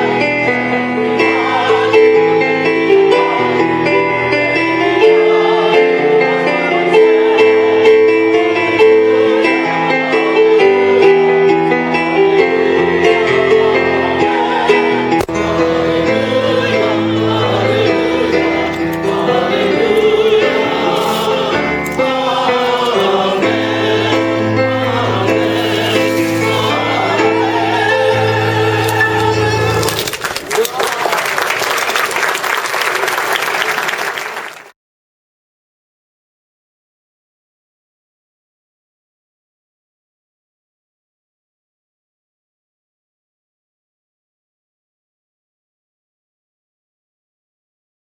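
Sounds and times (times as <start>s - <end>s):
choir singing a slow song: 0.0s - 29.9s
instrumental accompaniment: 0.0s - 30.4s.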